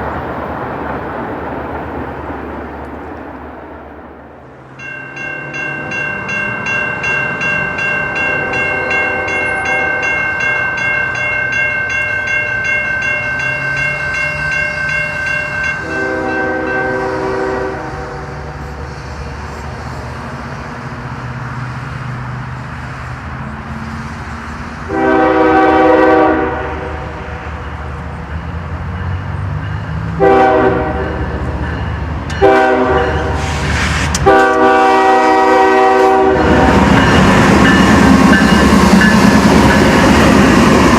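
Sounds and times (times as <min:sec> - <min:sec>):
train rumble: 0:00.0 - 0:40.9
locomotive horn blasts: 0:08.1 - 0:10.5, 0:14.7 - 0:18.5, 0:24.9 - 0:27.2, 0:30.2 - 0:31.4, 0:32.4 - 0:33.4, 0:34.2 - 0:37.8.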